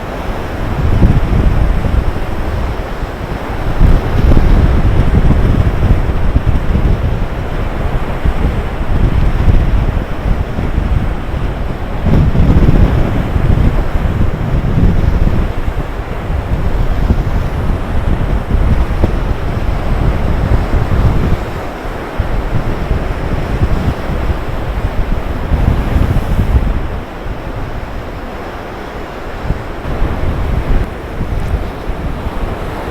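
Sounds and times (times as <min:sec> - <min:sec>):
surf breaking on rocks: 0:00.0 - 0:32.9
wind buffeting microphone: 0:00.0 - 0:32.9.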